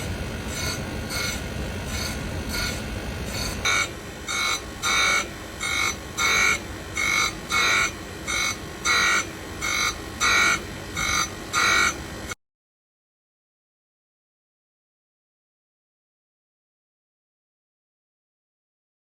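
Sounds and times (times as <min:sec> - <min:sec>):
grinding wheel rasping whine: 0:00.0 - 0:12.4.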